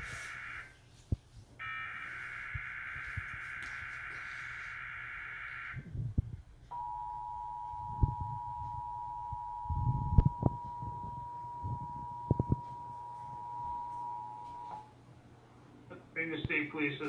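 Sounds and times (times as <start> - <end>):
dual-tone alert signal: 6.7 - 14.9.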